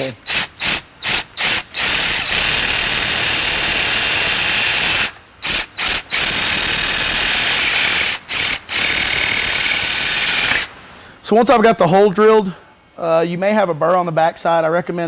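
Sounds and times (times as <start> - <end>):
electric drill drilling metal: 0.0 - 10.7.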